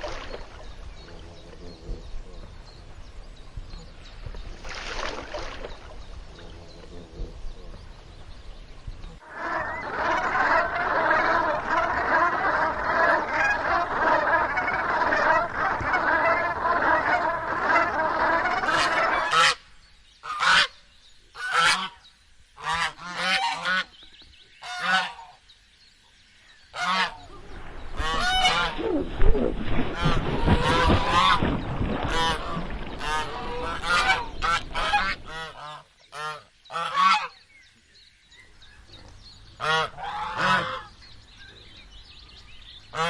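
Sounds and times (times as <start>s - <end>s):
geese honking: 9.3s - 19.6s, 20.2s - 20.8s, 21.4s - 22.0s, 22.6s - 23.9s, 24.6s - 25.4s, 26.8s - 27.2s, 28.0s - 29.0s, 29.8s - 37.4s, 39.6s - 40.9s.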